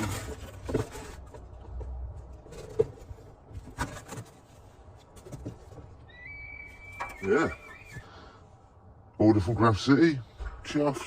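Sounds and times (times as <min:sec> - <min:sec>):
handling rustles: 0:00.0 - 0:06.0.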